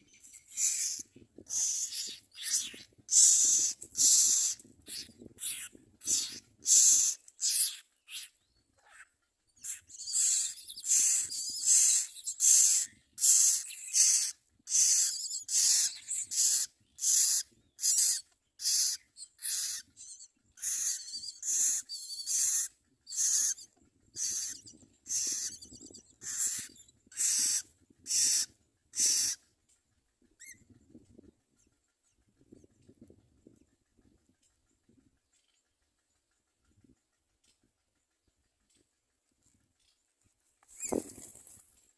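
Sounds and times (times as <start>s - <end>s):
nestlings raspy begging calls: 0.0s - 29.4s.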